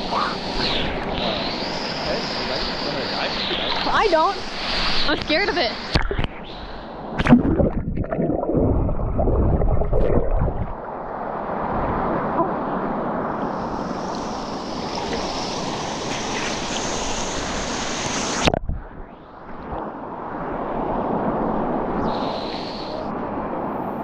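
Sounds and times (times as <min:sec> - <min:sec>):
rushing splashing water: 0:07.1 - 0:10.8.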